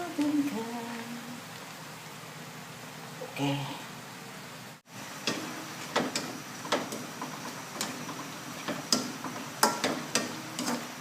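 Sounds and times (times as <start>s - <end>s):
spatula scraping a wok: 5.2s - 11.0s.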